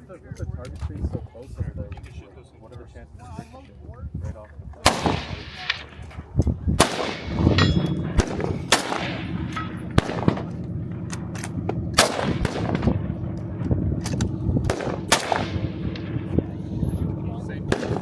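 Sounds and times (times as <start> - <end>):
steady low hum: 0.9 - 18.0
fainter gunshots: 4.8 - 6.0, 6.8 - 16.5, 17.7 - 18.0
gunshots with echo: 4.8 - 6.1, 6.8 - 13.7, 14.6 - 16.6, 17.7 - 18.0.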